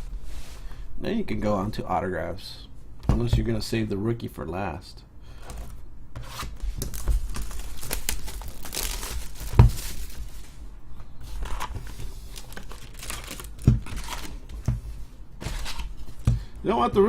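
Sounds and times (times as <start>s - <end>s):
plastic packaging crinkling: 6.7s - 10.6s, 11.3s - 14.7s.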